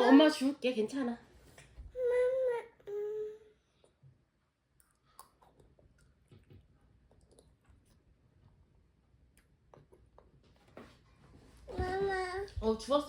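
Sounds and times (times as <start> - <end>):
toddler whiny hums: 2.0 - 3.6.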